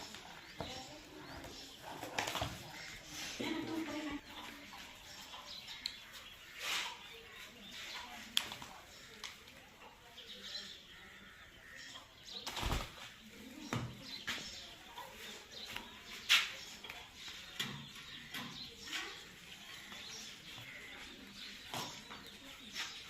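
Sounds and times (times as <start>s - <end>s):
wings flapping: 12.4s - 13.2s.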